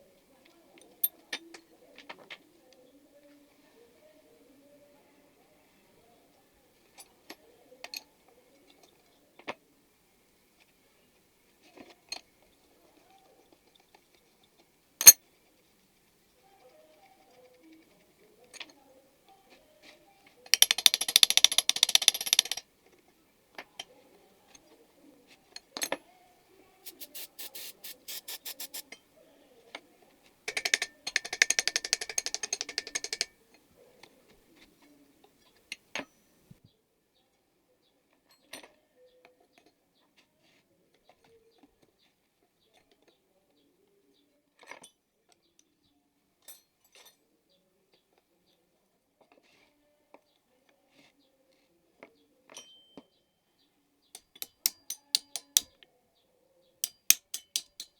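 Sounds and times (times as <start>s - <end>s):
bursts of rapid clicking: 20.6s - 22.6s
clicks and taps on small tool: 20.6s - 22.6s, 30.5s - 33.4s, 54.2s - 55.7s, 56.8s - 57.9s.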